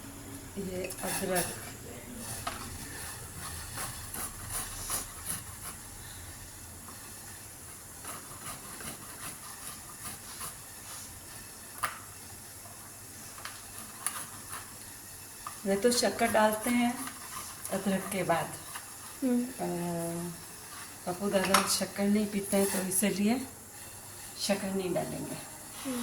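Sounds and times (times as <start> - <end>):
water heating in pot hiss: 0.0 - 26.0
light scrapes and clicks: 13.3 - 19.2, 20.6 - 23.0.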